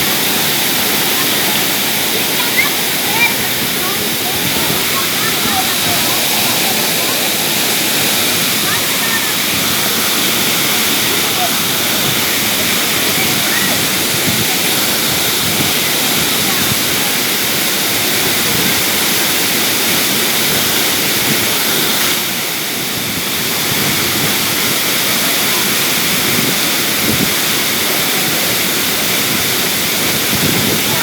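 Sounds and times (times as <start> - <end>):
waterfall rushing: 0.0 - 31.0.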